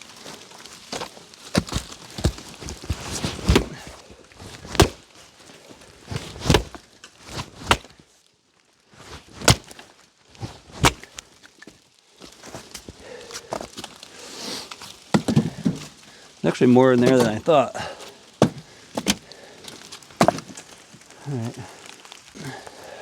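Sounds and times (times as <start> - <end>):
firewood landing with wooden knocks: 0.2 - 5.1, 6.0 - 8.0, 9.4 - 14.1, 14.8 - 21.1.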